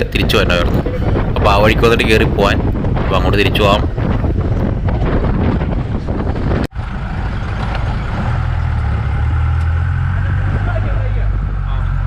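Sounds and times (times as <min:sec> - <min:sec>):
road and wind noise: 0:00.0 - 0:12.0
car engine running: 0:06.3 - 0:12.0.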